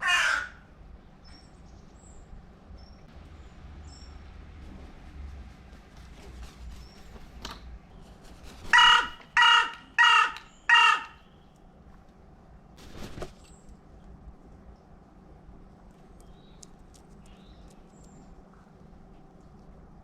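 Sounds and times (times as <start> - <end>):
crow cawing: 0.0 - 0.7, 8.7 - 11.3.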